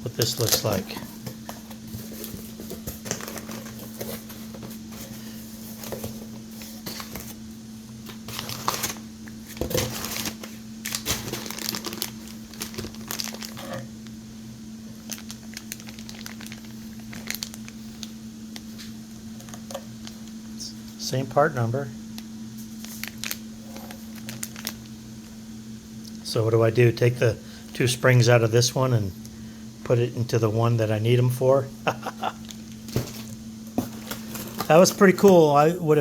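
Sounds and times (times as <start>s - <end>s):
packaging crinkling and tearing: 0.1s - 7.4s, 8.0s - 13.9s, 15.0s - 20.3s, 22.8s - 24.9s, 32.4s - 35.3s.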